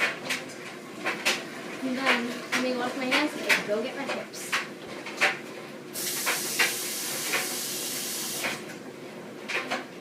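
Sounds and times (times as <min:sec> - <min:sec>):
tap water running: 0:00.0 - 0:08.8.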